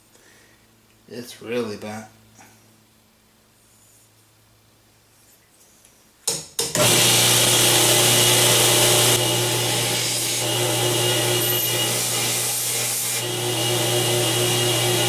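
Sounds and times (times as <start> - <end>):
electric grinder grinding metal: 6.8 - 15.0.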